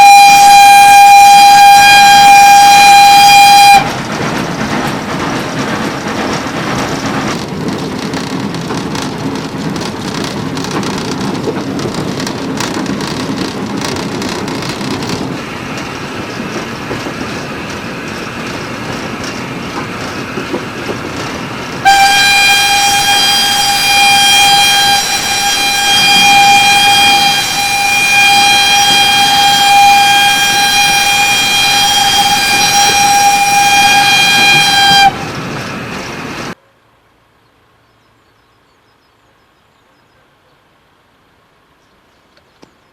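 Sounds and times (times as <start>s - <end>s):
steam whistle long note: 0.0s - 4.0s, 21.8s - 35.3s
steam locomotive running: 0.0s - 36.6s
clicking from the track: 3.8s - 21.9s.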